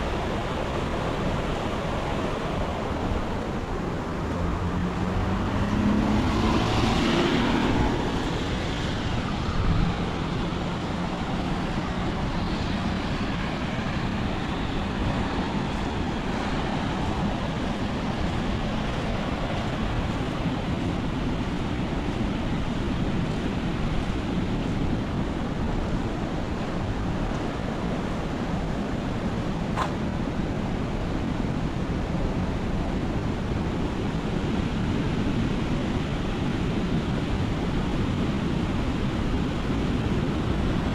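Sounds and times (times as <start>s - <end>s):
vehicle passing: 4.3s - 10.2s, 29.6s - 30.1s.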